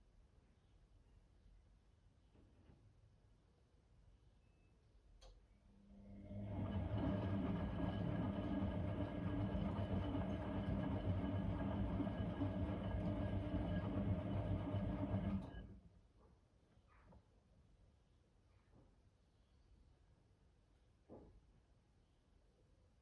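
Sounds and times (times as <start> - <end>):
washing machine hum and rumble: 5.8 - 15.9.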